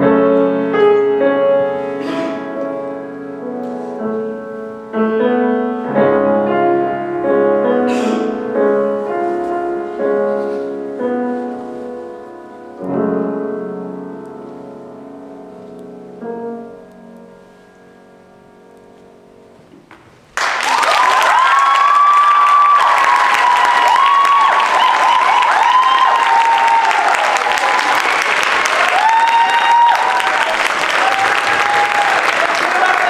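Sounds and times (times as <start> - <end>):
slow piano chords: 0.0 - 20.6.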